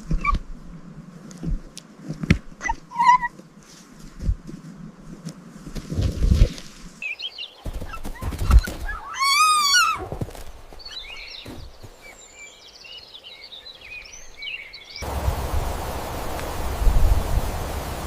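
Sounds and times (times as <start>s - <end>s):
small birds chirping: 7.0s - 15.3s
high-pitched farm animal call: 8.9s - 10.0s
steady rushing noise: 15.0s - 18.0s.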